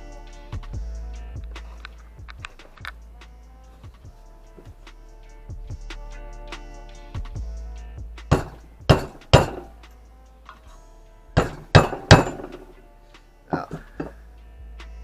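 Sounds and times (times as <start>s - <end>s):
background music: 0.0s - 15.0s
hammer striking metal socket: 8.3s - 9.8s, 11.4s - 12.7s.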